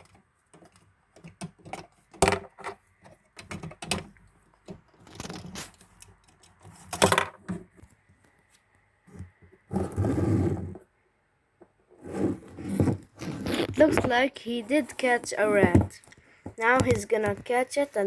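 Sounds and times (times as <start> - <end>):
plastic pieces clicking and tapping: 0.0 - 7.4, 15.2 - 17.6
rustling of handling: 12.3 - 18.0.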